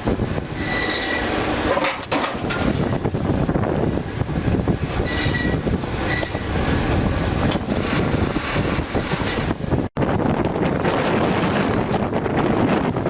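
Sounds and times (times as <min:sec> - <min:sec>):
diesel pile hammer rumbling: 0:00.0 - 0:13.0
wind buffeting microphone: 0:00.0 - 0:13.0.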